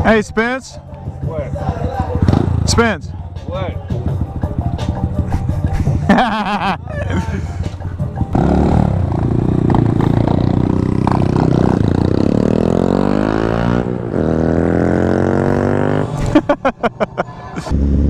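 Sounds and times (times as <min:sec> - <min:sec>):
motorcycle engine accelerating: 0:01.4 - 0:02.8, 0:08.2 - 0:16.4, 0:17.7 - 0:18.0.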